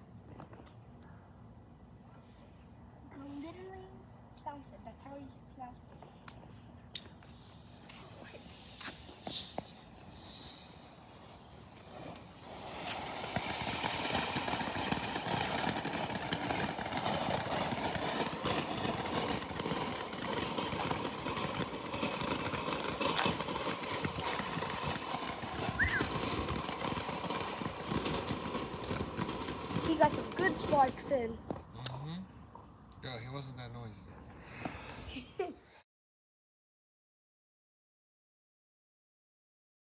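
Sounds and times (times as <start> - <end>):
firework fountain hissing crackle: 6.0 - 31.6, 34.4 - 35.6.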